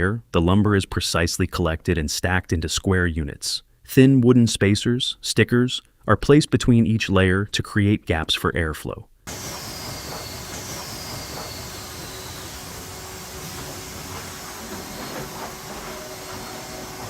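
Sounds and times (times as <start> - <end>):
sawmill machinery clattering: 9.3 - 17.0
steady machine hum: 9.3 - 17.0.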